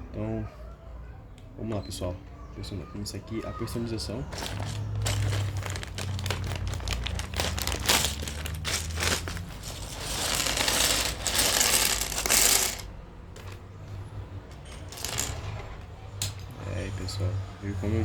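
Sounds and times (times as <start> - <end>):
plastic keycaps clattering: 4.3 - 13.6, 14.5 - 15.6
plastic packaging crinkling: 4.3 - 13.6.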